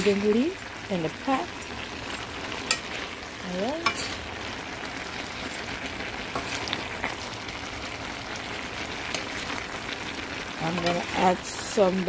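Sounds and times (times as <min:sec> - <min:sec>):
pot sizzling: 0:00.0 - 0:12.0.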